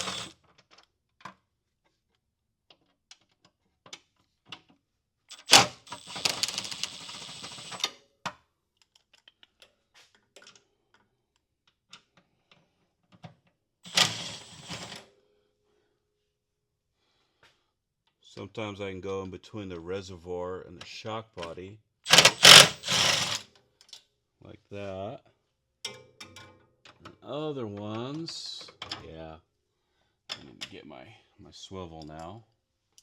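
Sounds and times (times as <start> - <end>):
socket ratchet clicking: 0.0 - 0.3, 5.3 - 7.7, 13.9 - 15.0, 22.1 - 23.4
metal tools clinking: 22.1 - 23.4.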